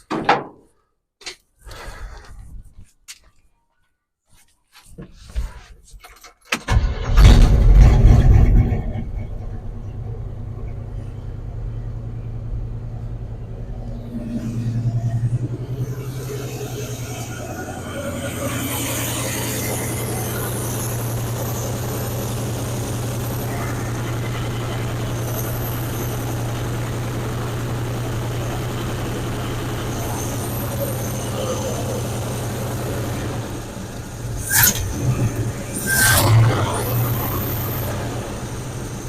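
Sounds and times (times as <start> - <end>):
pickup truck engine idling: 8.9 - 39.0.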